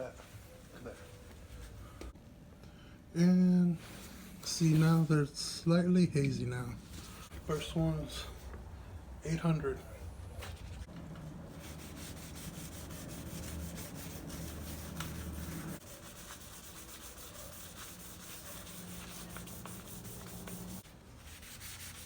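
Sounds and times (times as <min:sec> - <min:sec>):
sandpaper rubbing on plastic: 0:11.5 - 0:22.0.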